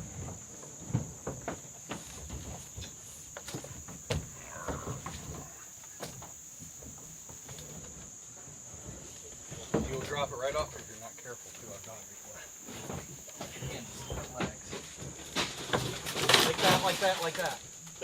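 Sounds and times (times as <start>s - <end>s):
light knocks and rustles: 0.0s - 17.6s
crickets chirring: 0.0s - 18.0s.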